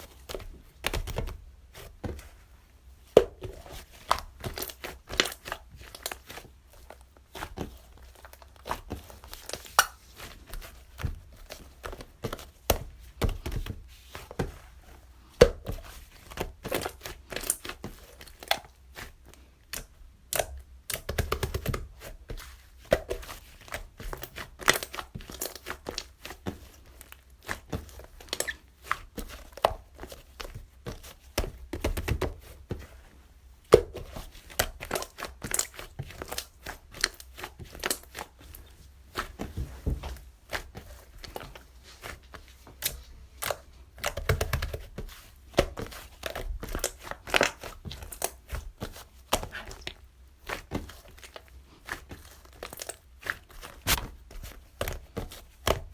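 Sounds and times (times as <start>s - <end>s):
crinkly material crackling: 21.2s - 55.9s.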